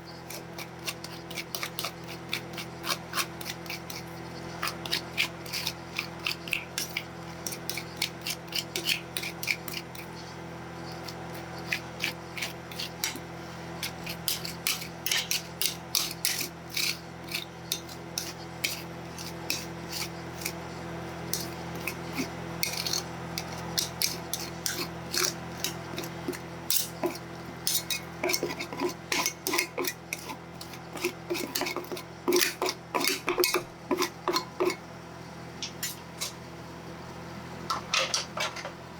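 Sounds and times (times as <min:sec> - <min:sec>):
low machine hum: 0:00.0 - 0:38.9
metal spatulas scraping steel plate: 0:00.3 - 0:10.1, 0:13.8 - 0:20.6, 0:21.3 - 0:34.8, 0:35.6 - 0:36.4.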